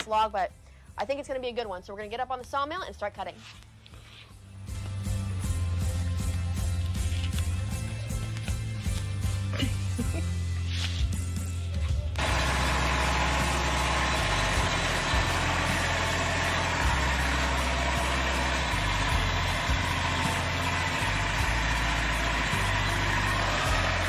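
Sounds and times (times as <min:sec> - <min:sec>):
band sawmill engine droning: 0:12.2 - 0:24.0.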